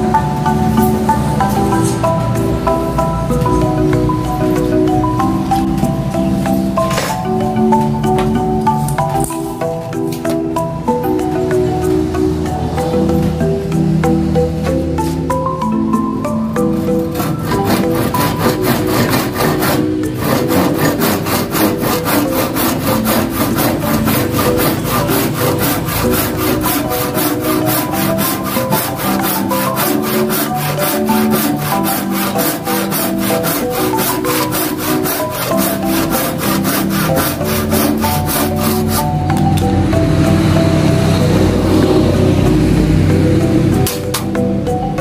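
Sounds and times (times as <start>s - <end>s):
background music: 0.0s - 45.0s
handsaw cutting through wood: 16.9s - 39.1s.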